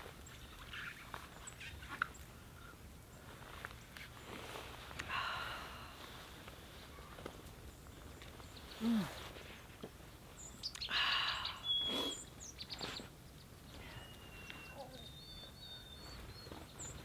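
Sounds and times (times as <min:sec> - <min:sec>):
small birds chirping: 0:06.9 - 0:17.0
whistled bird notes: 0:10.6 - 0:13.0, 0:13.7 - 0:17.0.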